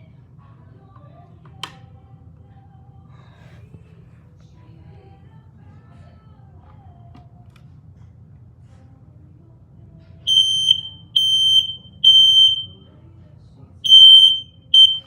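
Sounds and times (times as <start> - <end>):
smoke detector beeping: 10.3 - 12.8, 13.9 - 15.0.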